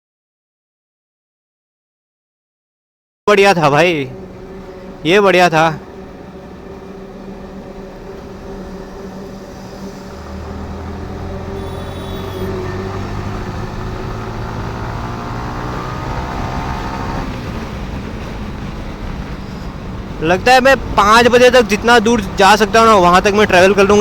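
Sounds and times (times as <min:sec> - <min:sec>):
wind and road noise: 0:03.3 - 0:24.0
motorcycle engine accelerating: 0:08.4 - 0:20.2.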